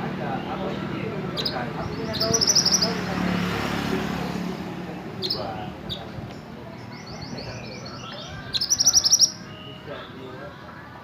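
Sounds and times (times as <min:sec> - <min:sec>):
songbird singing: 0:00.0 - 0:11.0
bird trill: 0:00.4 - 0:03.1, 0:05.2 - 0:06.1, 0:06.7 - 0:10.2.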